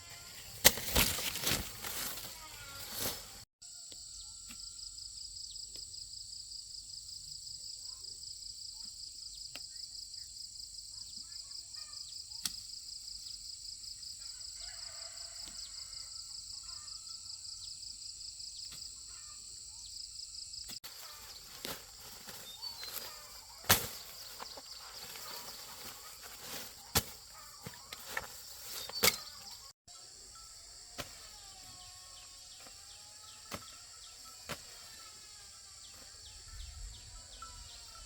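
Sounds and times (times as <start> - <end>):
insect chorus pulsing trill: 0.0 - 38.0
faint scattered calls: 20.8 - 38.0.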